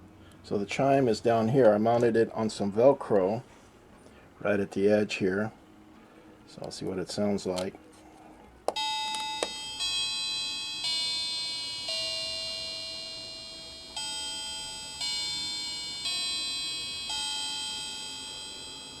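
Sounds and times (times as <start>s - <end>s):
electronic clock chime melody: 8.8s - 19.0s.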